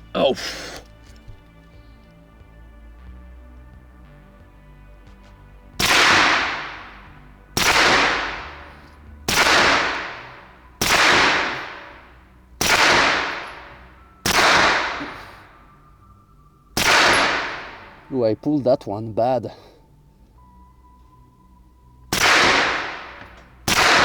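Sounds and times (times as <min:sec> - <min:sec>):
suppressed gun single shots: 0:05.8 - 0:12.0, 0:12.6 - 0:15.4, 0:16.8 - 0:18.0, 0:22.1 - 0:24.0.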